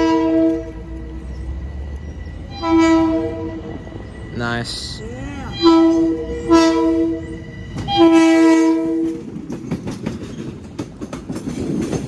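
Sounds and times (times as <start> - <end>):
train horn blasts: 0.0 - 1.3, 2.4 - 4.0, 5.3 - 9.4
train wheels clacking on rail joints: 5.6 - 12.0.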